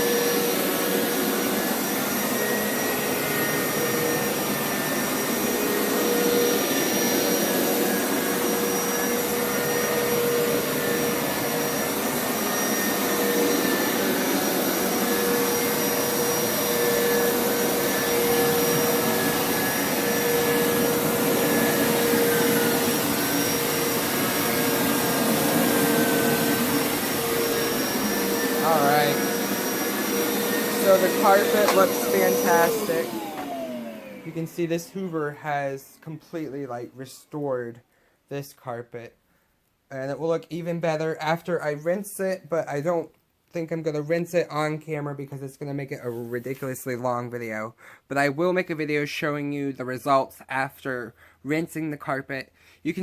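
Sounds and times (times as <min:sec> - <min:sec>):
carpet washer motor running: 0:00.0 - 0:34.5.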